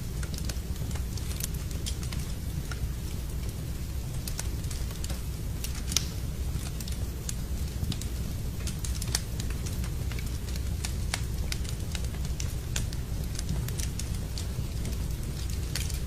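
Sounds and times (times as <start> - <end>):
wood fire crackling: 0.0 - 16.0.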